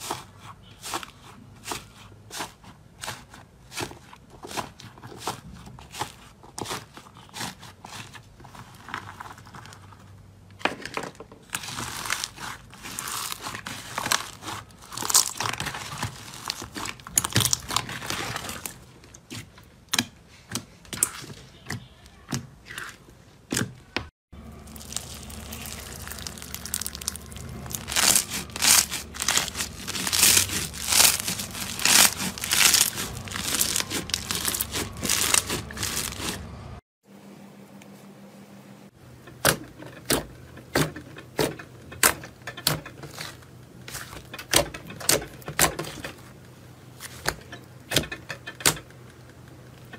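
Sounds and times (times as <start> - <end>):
slime crackling and clicking: 24.8 - 36.3.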